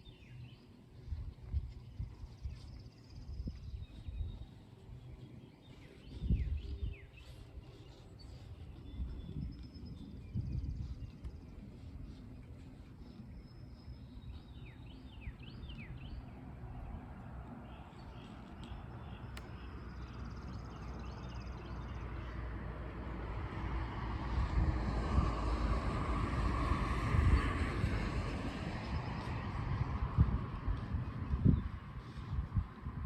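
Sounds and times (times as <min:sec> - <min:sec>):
birds chirping: 0:00.0 - 0:22.5.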